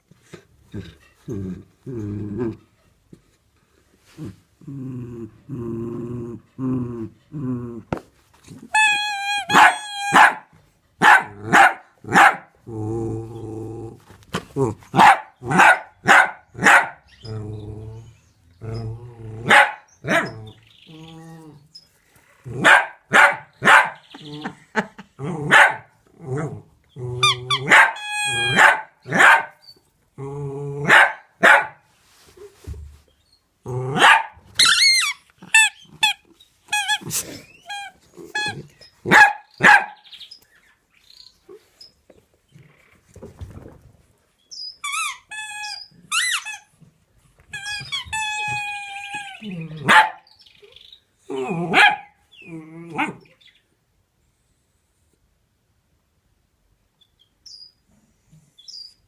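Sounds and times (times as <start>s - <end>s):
dog yelping: 8.7s - 12.4s, 27.2s - 29.6s, 34.0s - 36.2s, 47.6s - 50.2s
dog barking: 9.5s - 12.5s, 15.0s - 17.0s, 19.4s - 20.4s, 22.6s - 24.0s, 25.5s - 25.9s, 27.6s - 29.6s, 30.8s - 31.8s, 34.0s - 34.4s, 39.1s - 40.0s, 49.8s - 50.2s, 51.7s - 52.2s.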